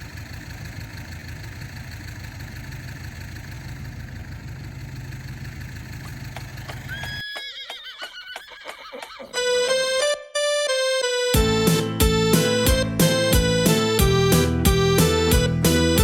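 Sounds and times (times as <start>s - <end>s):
engine running: 0.0s - 7.3s, 11.0s - 16.0s
horse whinnying: 6.8s - 9.5s.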